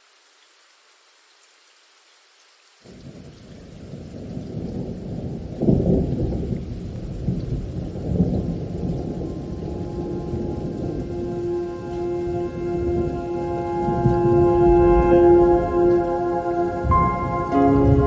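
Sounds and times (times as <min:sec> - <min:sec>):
light rain: 0:00.0 - 0:18.0
thunder rolling: 0:04.1 - 0:18.0.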